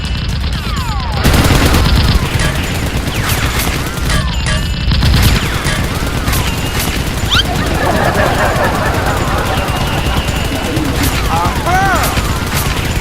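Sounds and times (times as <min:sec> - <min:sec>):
rapid gunfire: 0:01.2 - 0:13.0
falling whistle tones: 0:07.3 - 0:11.4.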